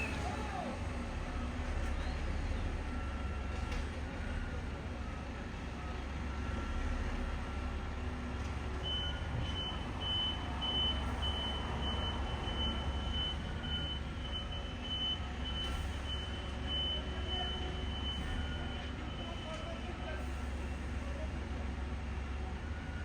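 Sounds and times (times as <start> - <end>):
diesel engine rumble: 0.0 - 23.0
back-up alarm beeping: 8.8 - 19.5.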